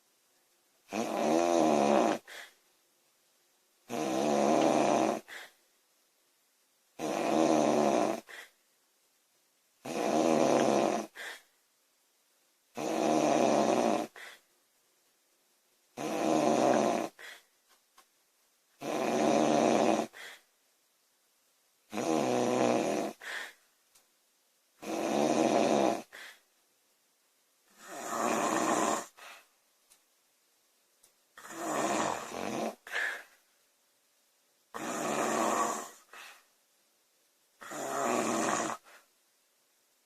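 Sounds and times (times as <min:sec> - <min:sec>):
woman snoring: 0:00.9 - 0:02.6, 0:03.9 - 0:05.6, 0:07.0 - 0:08.5, 0:09.8 - 0:11.4, 0:12.8 - 0:14.4, 0:16.0 - 0:17.4, 0:18.8 - 0:20.4, 0:21.9 - 0:23.6, 0:24.8 - 0:26.4, 0:27.7 - 0:29.4, 0:31.4 - 0:33.3, 0:34.7 - 0:36.3, 0:37.6 - 0:39.0
faint puff of breath: 0:02.2 - 0:02.6, 0:05.2 - 0:05.6, 0:08.2 - 0:08.6, 0:11.1 - 0:11.6, 0:14.2 - 0:14.5, 0:17.1 - 0:17.6, 0:20.1 - 0:20.5, 0:23.2 - 0:23.7, 0:26.1 - 0:26.5, 0:29.1 - 0:29.6, 0:32.9 - 0:33.4, 0:36.0 - 0:36.5.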